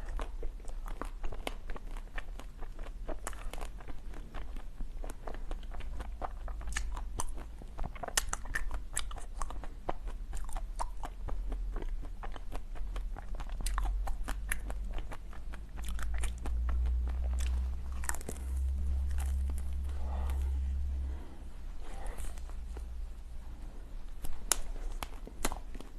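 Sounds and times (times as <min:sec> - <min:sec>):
ice being chewed: 0:00.0 - 0:23.0
low hum: 0:14.0 - 0:25.9.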